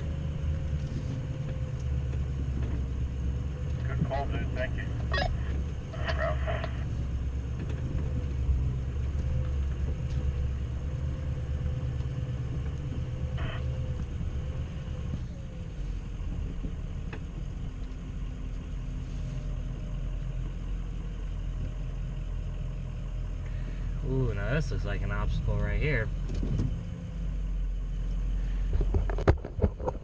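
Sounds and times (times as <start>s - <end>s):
pickup engine rumbling: 0.0s - 30.0s.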